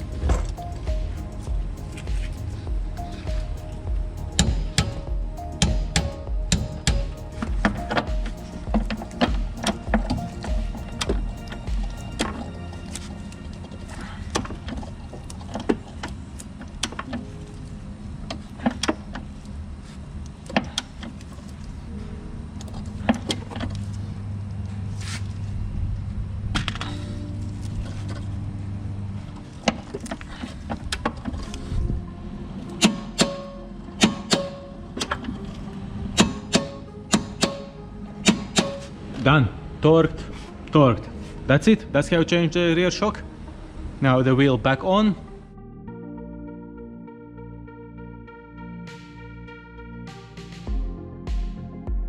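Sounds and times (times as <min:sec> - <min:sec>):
background music with beat: 0:00.0 - 0:15.3, 0:31.8 - 0:39.6, 0:45.0 - 0:52.0
hand tools clicking and knocking: 0:36.2 - 0:37.7.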